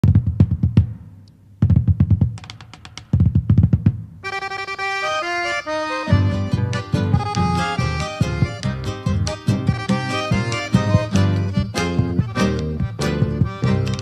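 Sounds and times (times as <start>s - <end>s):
drum strokes: 0.0s - 4.3s, 5.9s - 14.0s
sustained melody of held notes: 4.3s - 14.0s.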